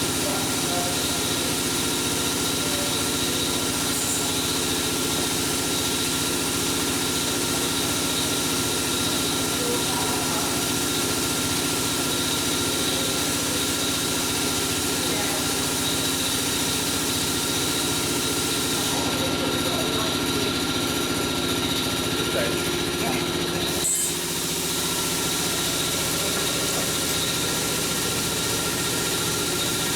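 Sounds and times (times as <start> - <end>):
steady mechanical drone: 0.0 - 29.9.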